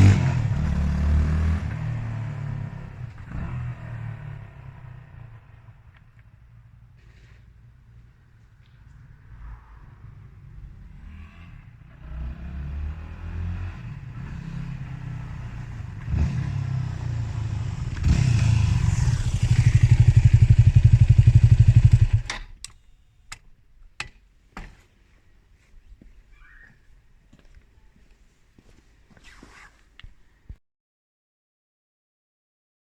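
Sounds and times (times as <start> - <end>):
motorcycle engine running: 13.9 - 22.3.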